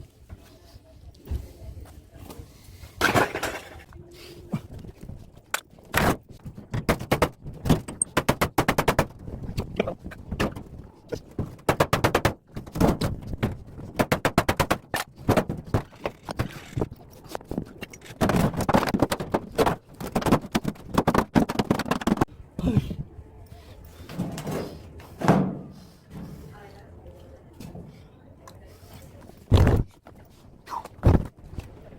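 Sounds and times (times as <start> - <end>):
fast clattering impacts: 3.0 - 3.9, 11.4 - 22.3.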